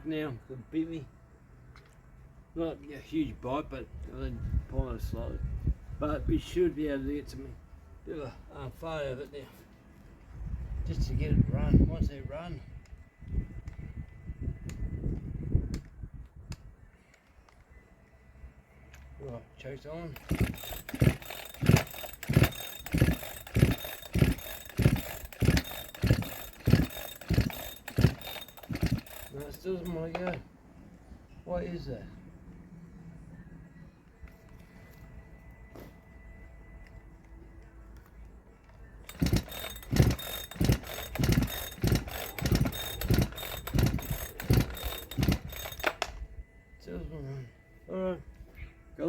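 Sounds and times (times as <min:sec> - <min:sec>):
chainsaw pull-cord cranking: 0:20.1 - 0:30.4, 0:39.0 - 0:46.2.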